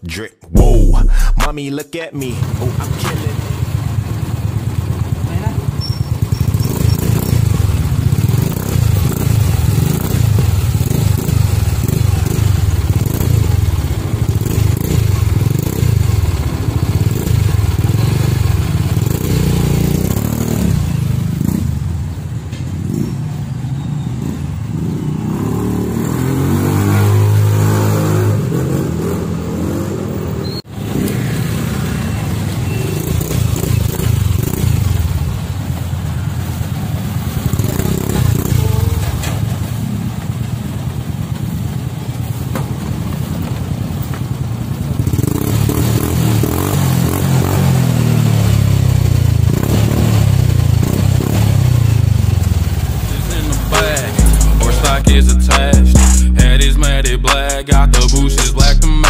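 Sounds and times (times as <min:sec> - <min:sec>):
engine idling unevenly and revving: 0:02.3 - 0:22.0, 0:44.6 - 0:59.0.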